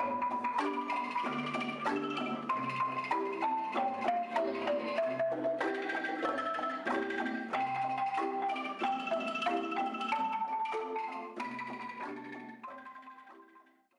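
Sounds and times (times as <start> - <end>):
bouncy marimba melody: 0.0 - 13.7.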